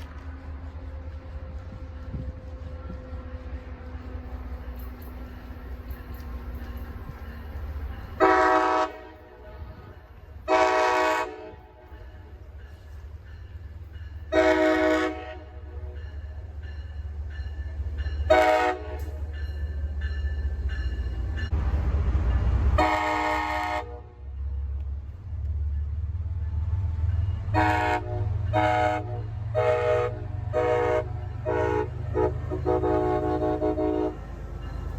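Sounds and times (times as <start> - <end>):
train air horn blasts: 8.2 - 12.3, 14.3 - 16.0, 18.2 - 19.2, 22.7 - 24.4, 27.4 - 34.3.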